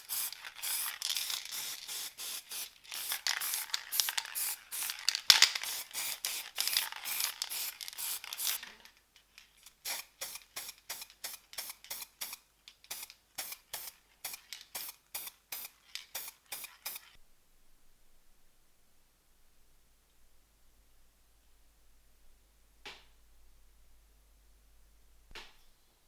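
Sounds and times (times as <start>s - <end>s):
spray paint can hissing: 0.0s - 8.6s, 9.6s - 17.2s.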